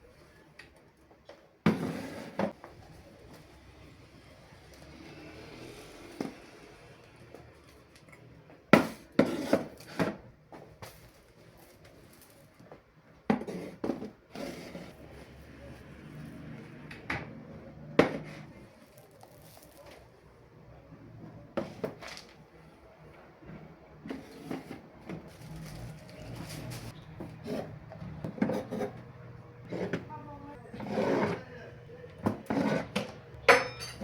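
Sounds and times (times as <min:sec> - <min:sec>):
jars knocking and clattering on shelves: 0:32.2 - 0:34.0.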